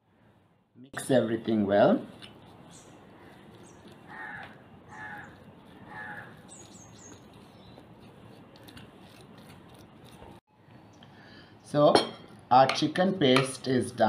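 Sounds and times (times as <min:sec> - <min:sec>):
bird calling: 0:02.7 - 0:07.8.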